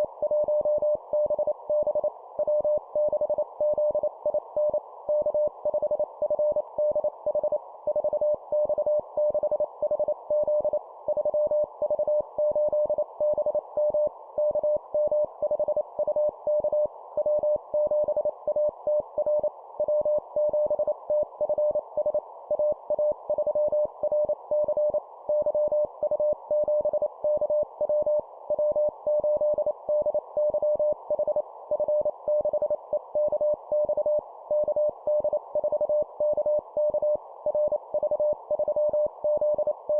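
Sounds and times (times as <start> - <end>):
morse code beeps: 10.4 - 39.9.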